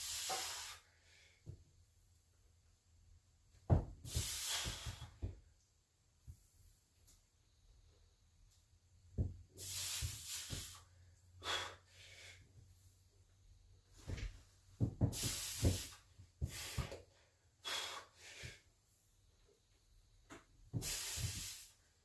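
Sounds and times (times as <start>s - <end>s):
person breathing hard: 9.6s - 12.7s, 15.0s - 18.8s.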